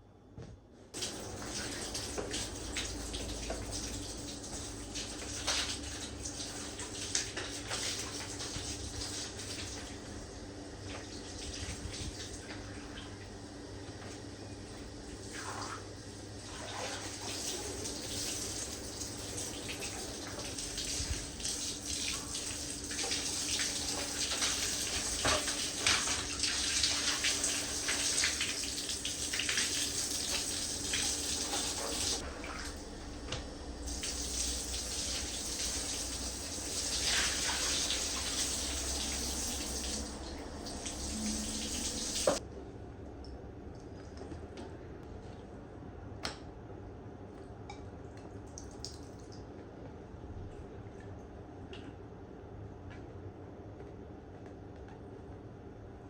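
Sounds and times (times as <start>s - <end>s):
tap water running into sink: 1.0s - 10.1s, 16.6s - 42.4s.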